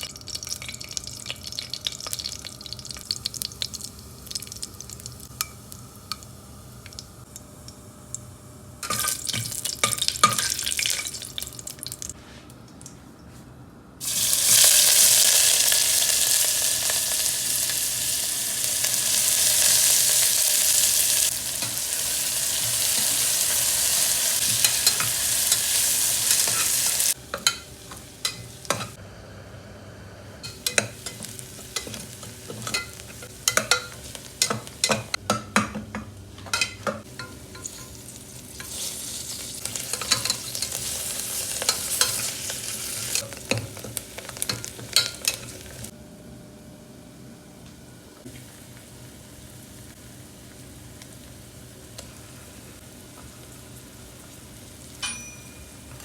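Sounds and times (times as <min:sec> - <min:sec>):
food sizzling in hot oil: 0:14.0 - 0:29.0, 0:30.4 - 0:35.2, 0:37.0 - 0:45.9
spoon scraping and knocking pan: 0:30.4 - 0:37.9.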